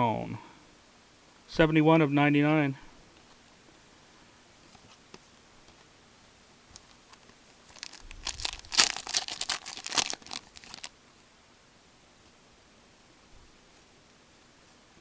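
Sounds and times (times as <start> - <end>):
wrapper crinkling: 6.7 - 10.9
foil card pack tearing: 7.6 - 10.9.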